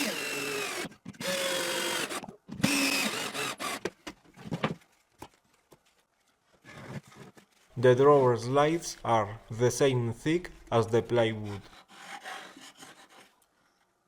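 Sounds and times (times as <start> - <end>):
cordless drill driving screws: 0.0 - 3.9.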